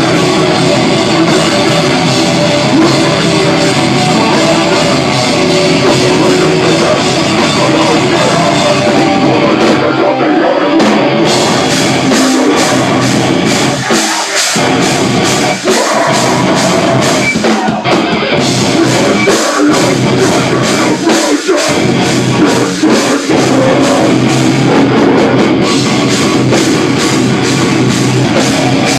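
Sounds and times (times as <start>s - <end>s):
distorted guitars: 0.0s - 28.9s
drum kit playing fast: 0.0s - 28.9s.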